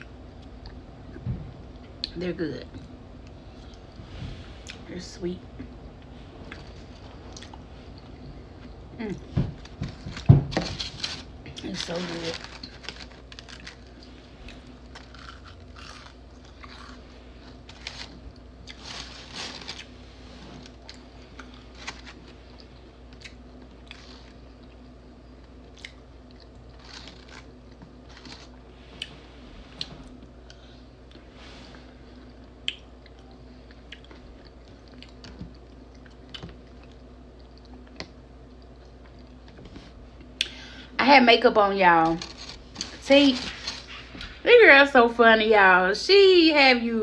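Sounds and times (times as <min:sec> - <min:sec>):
faint steady hum: 0:00.0 - 0:47.0
person chewing food: 0:05.6 - 0:09.9, 0:12.4 - 0:19.0, 0:19.6 - 0:31.2, 0:32.1 - 0:40.8.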